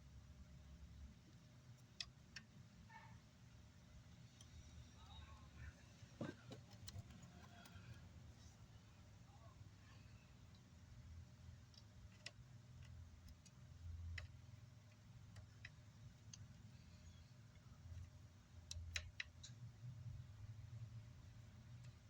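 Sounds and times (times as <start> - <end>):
low steady hum: 0.0 - 22.0
hand tools clicking on circuit board: 11.6 - 19.7.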